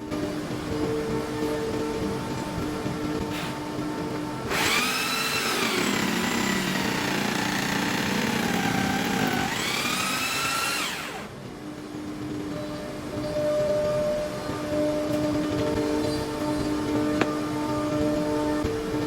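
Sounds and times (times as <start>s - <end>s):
electric jigsaw cutting: 4.5s - 11.3s.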